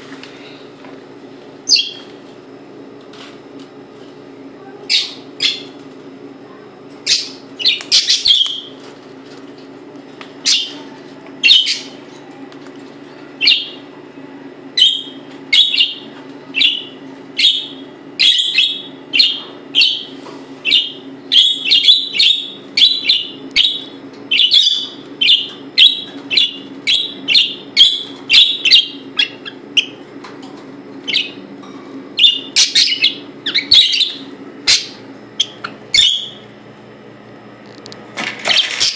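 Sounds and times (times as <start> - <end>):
parrot chirping: 1.6 - 2.0, 4.9 - 5.7, 7.0 - 8.7, 10.4 - 10.8, 11.4 - 12.0, 13.4 - 13.8, 14.8 - 16.0, 16.6 - 30.0, 31.1 - 31.4, 32.2 - 36.4.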